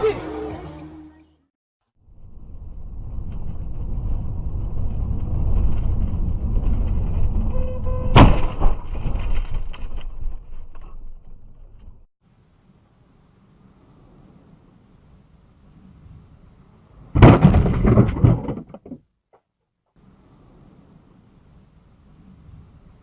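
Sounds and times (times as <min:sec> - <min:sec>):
road and engine rumble: 0:00.0 - 0:19.2, 0:20.0 - 0:23.0
loud sharp crash impact: 0:08.1 - 0:09.4, 0:17.2 - 0:18.4
rattling and clatter: 0:17.2 - 0:19.0.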